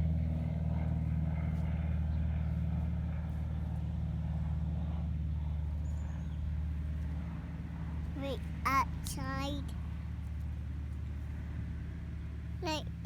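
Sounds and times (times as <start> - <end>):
airplane engine drone: 0.0 - 10.0.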